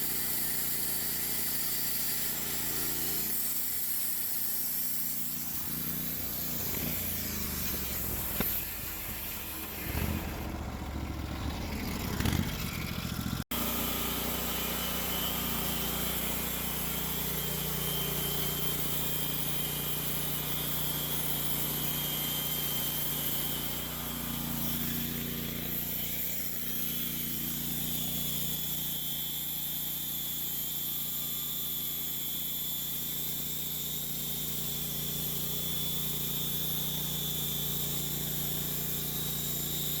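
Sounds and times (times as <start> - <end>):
sawmill engine droning: 0.0 - 40.0
engine knocks: 7.7 - 13.5.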